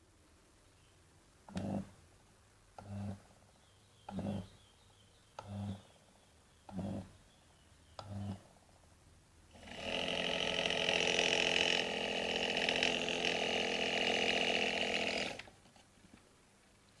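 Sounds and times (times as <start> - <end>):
washing machine motor running: 9.6 - 15.4.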